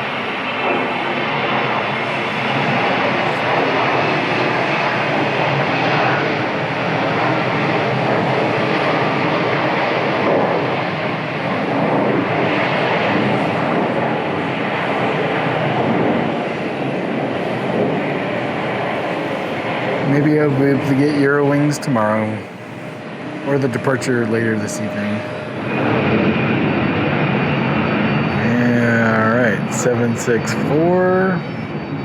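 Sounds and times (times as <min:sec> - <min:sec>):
jet engines rushing: 0:00.0 - 0:32.0.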